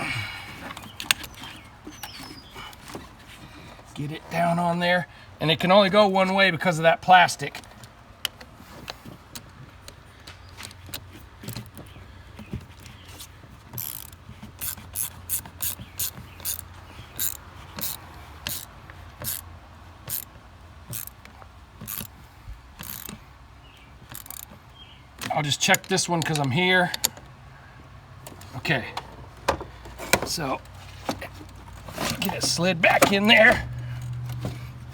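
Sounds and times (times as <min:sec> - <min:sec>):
socket ratchet clicking: 0:13.8 - 0:20.3, 0:20.9 - 0:22.2, 0:22.8 - 0:23.2, 0:24.0 - 0:24.6.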